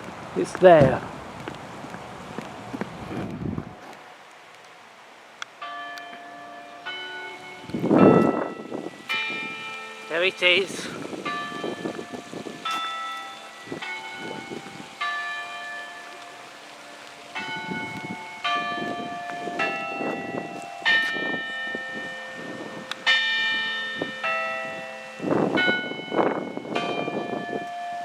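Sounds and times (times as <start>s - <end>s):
tower bells chiming a tune: 5.6s - 28.0s.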